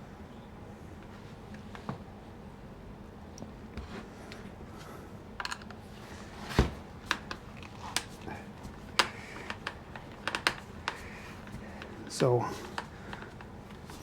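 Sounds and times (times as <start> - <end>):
clicks and taps of small tools: 9.0 - 12.0.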